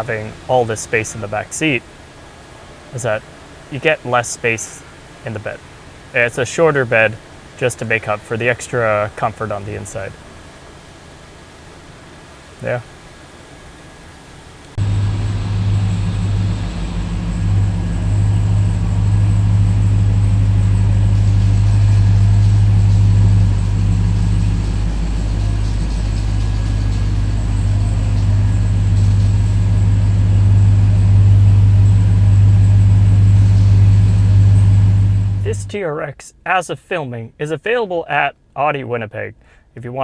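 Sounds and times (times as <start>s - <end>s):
truck engine idling: 14.7s - 35.8s.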